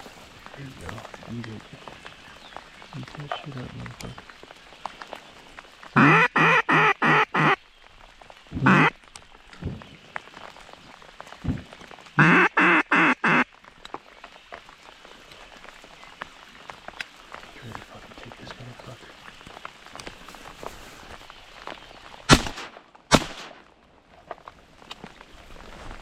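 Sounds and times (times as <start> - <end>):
duck call quacks: 6.0 - 7.6, 8.6 - 8.9, 12.2 - 13.5.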